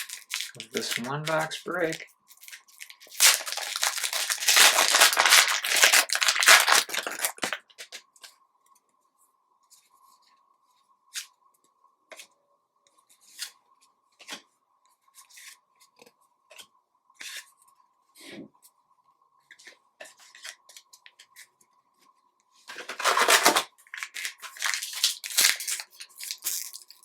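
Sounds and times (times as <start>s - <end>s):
card pack wrapper crinkling and tearing: 0.0s - 7.9s, 22.7s - 27.0s.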